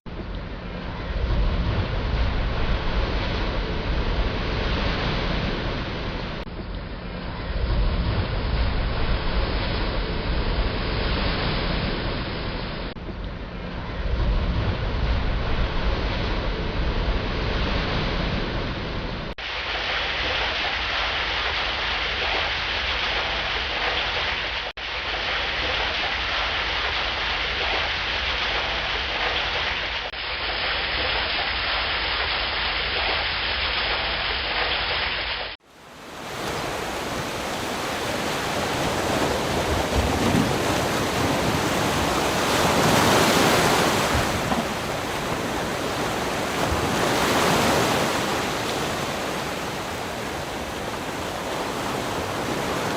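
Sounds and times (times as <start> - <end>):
waterfall rushing: 35.6 - 52.9.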